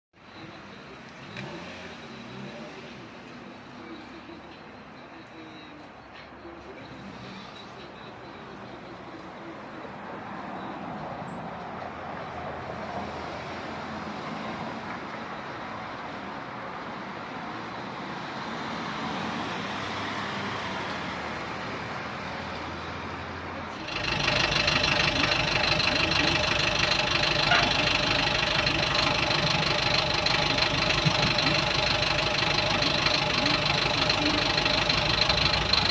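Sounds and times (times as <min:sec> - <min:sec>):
engine running: 0:23.7 - 0:35.9.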